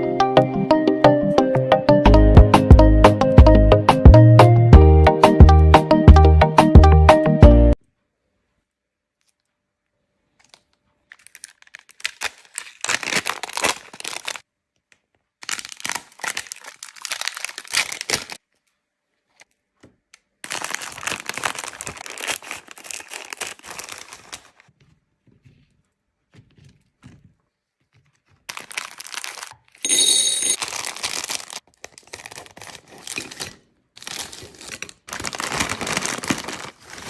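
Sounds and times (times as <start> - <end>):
wrapper crinkling and tearing: 10.3 - 19.6, 20.4 - 24.7, 28.1 - 29.9, 30.5 - 37.0.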